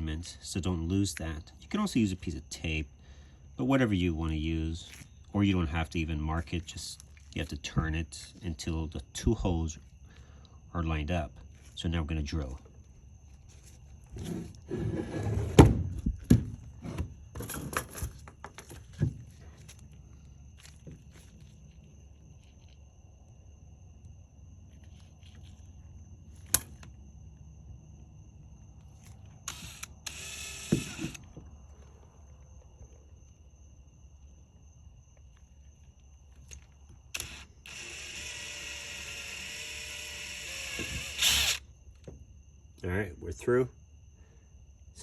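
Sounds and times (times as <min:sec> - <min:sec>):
power drill boring through metal: 0:29.5 - 0:31.2, 0:37.1 - 0:41.6.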